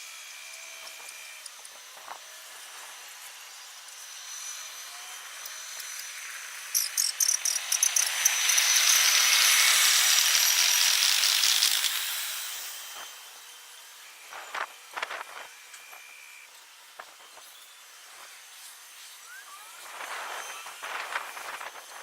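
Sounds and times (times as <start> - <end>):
crickets chirring: 6.7 - 11.0.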